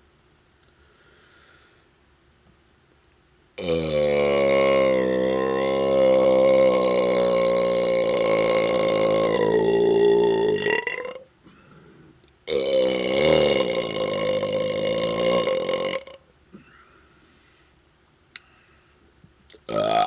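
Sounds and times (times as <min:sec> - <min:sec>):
long loud burps: 0:03.6 - 0:11.3, 0:12.4 - 0:16.9, 0:19.7 - 0:20.0.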